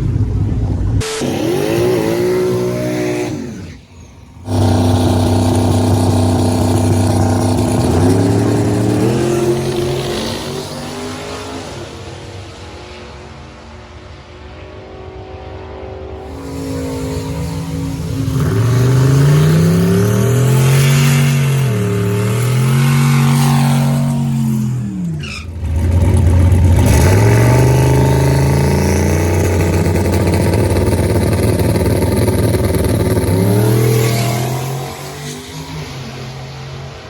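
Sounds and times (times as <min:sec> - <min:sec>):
drag car engine revving: 0:00.0 - 0:12.8, 0:16.2 - 0:37.0
gear change: 0:04.4 - 0:11.8, 0:16.3 - 0:36.3.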